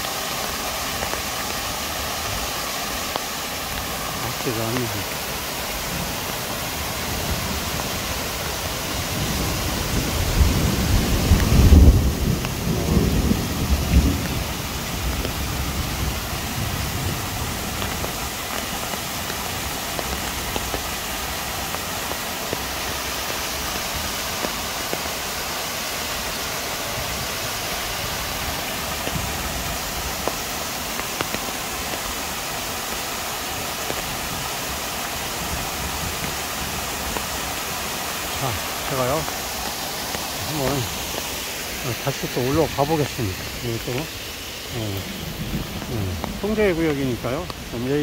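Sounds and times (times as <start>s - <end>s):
rain falling: 0.0s - 48.0s
waterfall pouring: 0.0s - 48.0s
low rumble of thunder: 9.0s - 17.7s, 45.0s - 47.8s.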